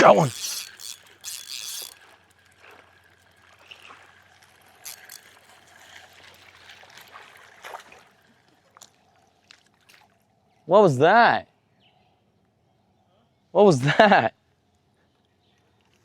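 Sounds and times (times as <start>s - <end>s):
water splashing and trickling: 0.0s - 10.6s.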